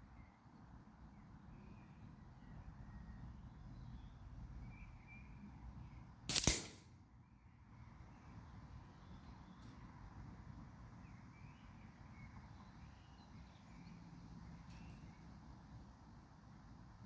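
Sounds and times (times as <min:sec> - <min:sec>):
faint bird chirps: 0:00.1 - 0:06.1, 0:11.0 - 0:15.4
air rifle shot: 0:06.3 - 0:06.9.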